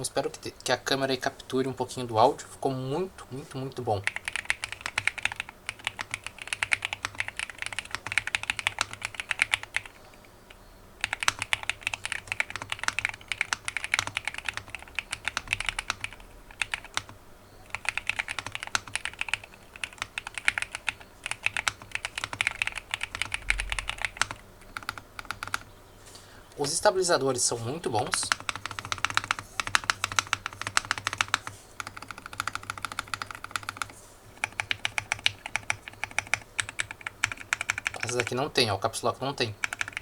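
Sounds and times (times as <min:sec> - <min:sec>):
mechanical keyboard typing: 0:04.0 - 0:10.2, 0:11.0 - 0:25.7, 0:28.0 - 0:38.5, 0:39.5 - 0:40.0.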